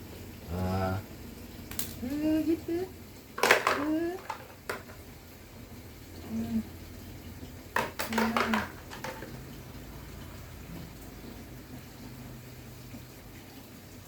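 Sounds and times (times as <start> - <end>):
plastic toy clicks and knocks: 3.4 - 5.0, 7.8 - 9.4.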